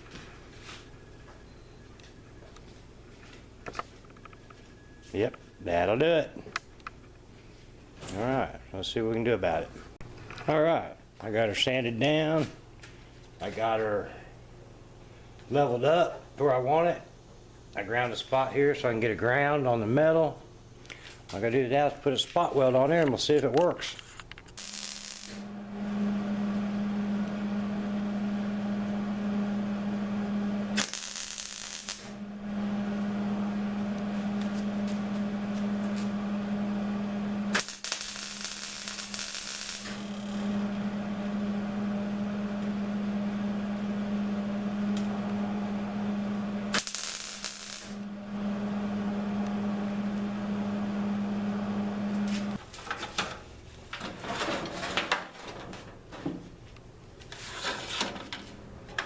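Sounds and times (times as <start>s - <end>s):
electric welder buzzing: 24.4s - 52.6s.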